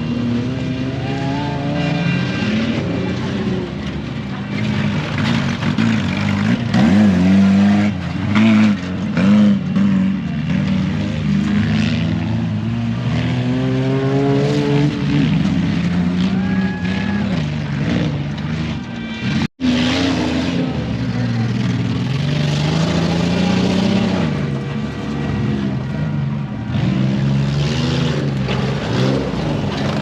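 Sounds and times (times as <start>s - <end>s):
truck engines revving: 0.0s - 30.0s.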